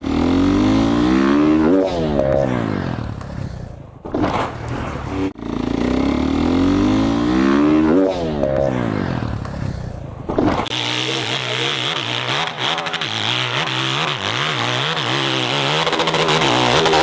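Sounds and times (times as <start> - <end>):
dirt bike engine revving: 0.0 - 17.0.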